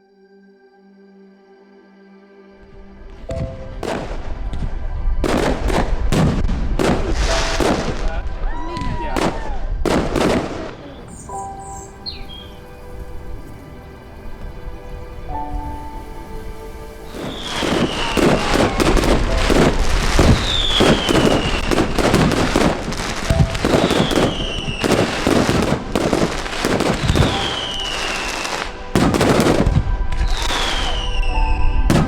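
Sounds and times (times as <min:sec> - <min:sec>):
background music: 0:00.0 - 0:32.0
fireworks bangs and crackles: 0:03.3 - 0:12.4, 0:17.0 - 0:32.0
falling firework whistle: 0:05.2 - 0:12.6, 0:17.0 - 0:32.0.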